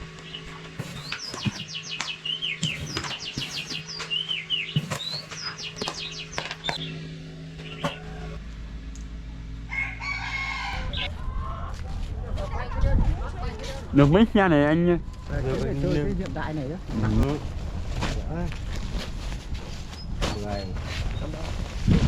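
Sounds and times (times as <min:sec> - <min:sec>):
low steady hum: 0:00.0 - 0:12.3.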